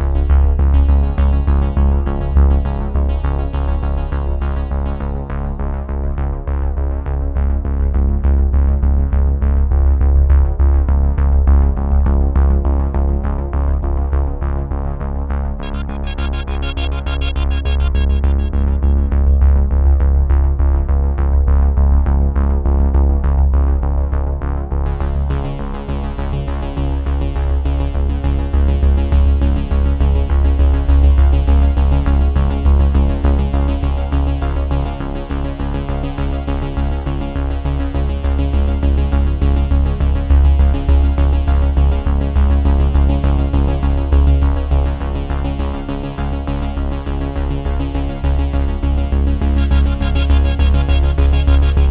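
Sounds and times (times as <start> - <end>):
electronic music: 15.6 - 20.2, 48.1 - 51.9.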